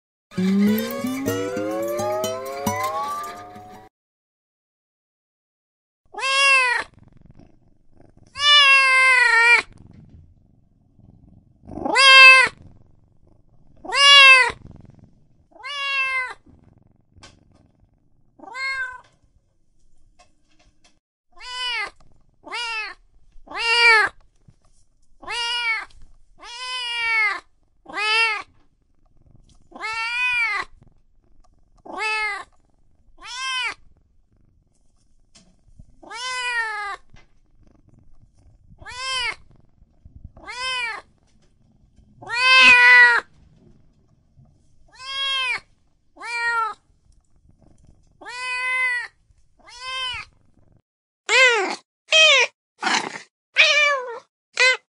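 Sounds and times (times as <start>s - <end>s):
cats meowing: 6.2s - 6.9s, 8.4s - 9.7s, 11.8s - 12.6s, 13.9s - 14.6s, 22.5s - 24.1s, 25.2s - 28.5s, 31.9s - 32.5s, 33.2s - 33.8s, 36.0s - 37.0s, 38.8s - 39.4s, 40.4s - 41.1s, 42.2s - 43.2s, 44.9s - 45.6s, 46.2s - 46.8s, 48.2s - 50.3s, 51.3s - 52.6s, 53.6s - 54.9s.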